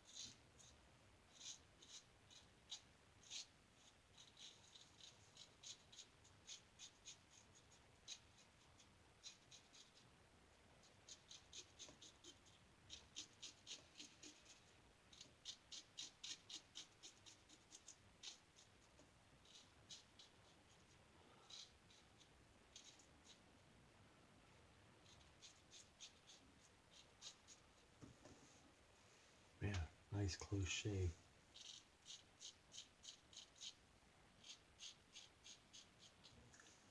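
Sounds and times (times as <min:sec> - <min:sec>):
razor scratching through stubble: 0:01.3 - 0:10.0, 0:11.0 - 0:23.4, 0:25.0 - 0:27.6, 0:31.5 - 0:33.8, 0:34.4 - 0:36.3.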